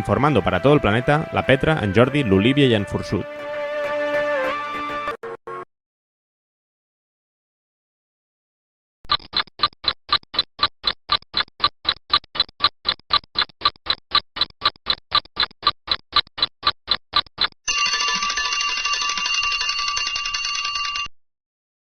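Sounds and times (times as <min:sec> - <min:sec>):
alarm clock beeping: 0:16.9 - 0:21.1
alarm clock ringing: 0:17.7 - 0:21.1.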